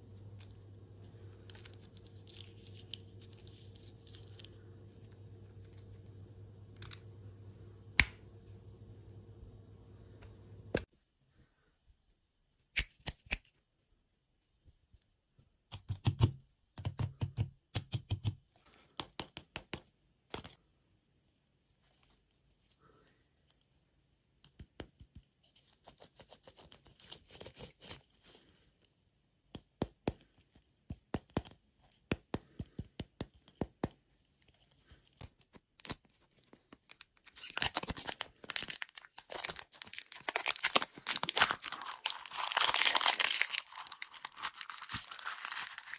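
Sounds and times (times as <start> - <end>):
plastic packaging crinkling and tearing: 1.5 - 4.5, 34.9 - 45.9.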